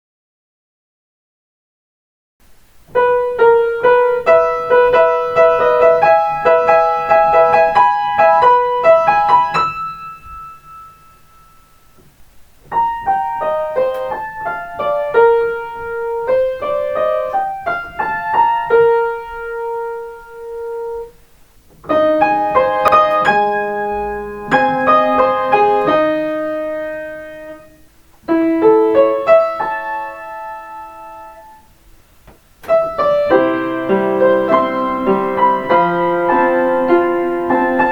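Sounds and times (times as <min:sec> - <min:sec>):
piano playing chime melodies: 0:03.8 - 0:12.0, 0:12.7 - 0:21.1, 0:21.9 - 0:27.6.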